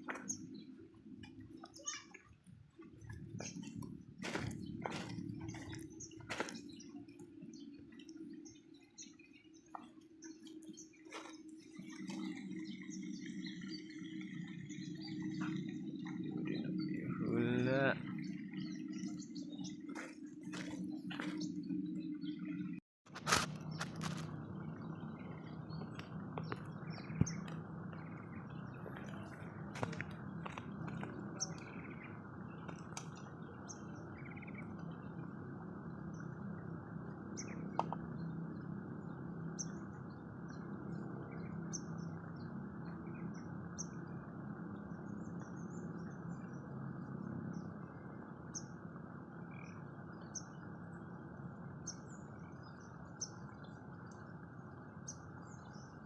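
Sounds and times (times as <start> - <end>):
low outdoor background rumble: 0.0 - 56.0
bird chirping: 24.7 - 35.3.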